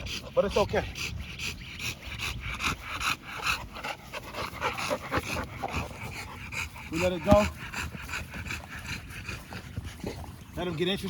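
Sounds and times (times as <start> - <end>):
dog panting rapidly: 0.0 - 11.0.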